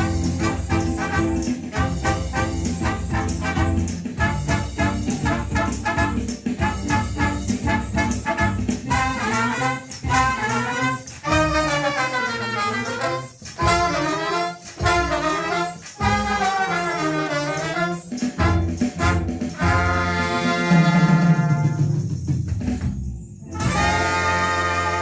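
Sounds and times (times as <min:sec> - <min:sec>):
steady bass: 0:00.0 - 0:09.3
brass melody: 0:00.0 - 0:22.1, 0:23.5 - 0:25.0.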